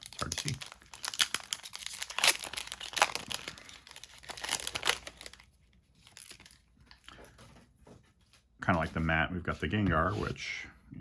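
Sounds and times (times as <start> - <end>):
foil wrapper crinkling: 0.0 - 7.4.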